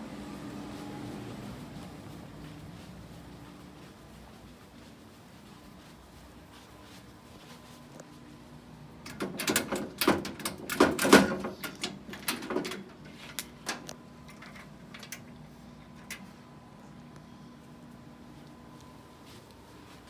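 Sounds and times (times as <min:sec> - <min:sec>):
faint steady hum: 0:00.0 - 0:20.0
clatter of clicks and knocks: 0:09.0 - 0:15.4.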